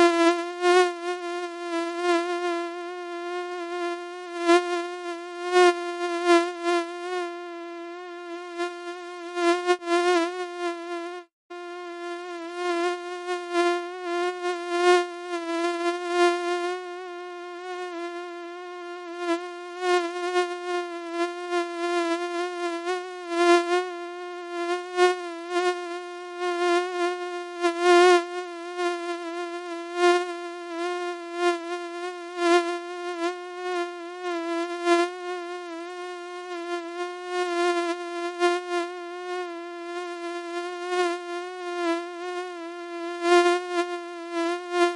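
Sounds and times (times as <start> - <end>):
mosquito wing whine: 0.0 - 44.9.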